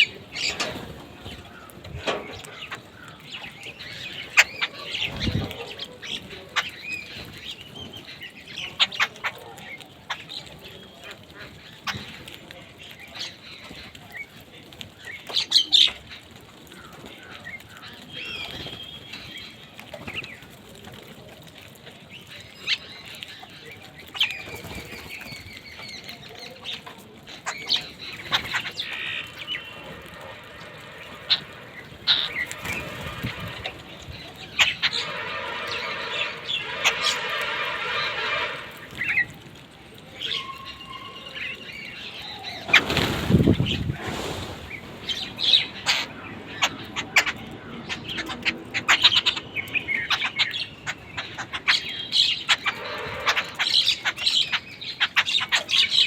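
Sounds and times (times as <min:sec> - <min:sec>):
rapid rattling bird chatter: 0:00.0 - 0:56.0
bird wing flaps: 0:42.7 - 0:45.4.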